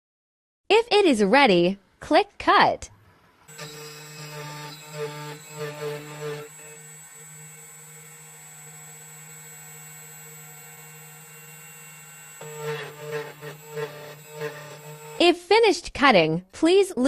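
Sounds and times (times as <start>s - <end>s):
key cutting machine whine: 3.5s - 15.2s.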